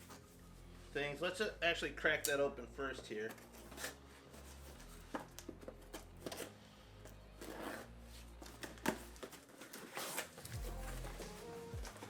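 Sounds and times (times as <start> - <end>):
cardboard and paper rustling: 3.0 - 12.0.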